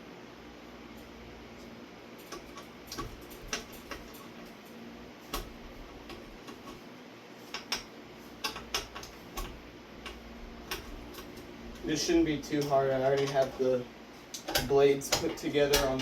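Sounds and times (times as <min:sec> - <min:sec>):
steady low hum: 0:00.0 - 0:16.0
small parts clicking and tapping: 0:02.2 - 0:06.8, 0:07.5 - 0:11.9, 0:12.5 - 0:13.7, 0:14.3 - 0:16.0.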